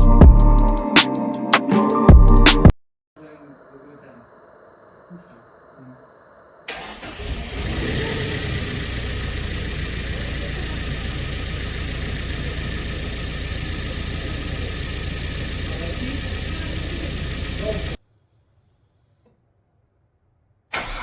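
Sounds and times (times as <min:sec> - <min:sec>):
car engine idling: 0:06.7 - 0:18.0.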